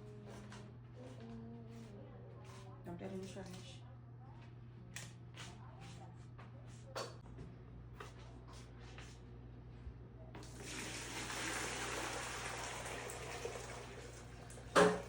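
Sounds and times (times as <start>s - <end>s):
water running from a tap: 10.4s - 15.0s.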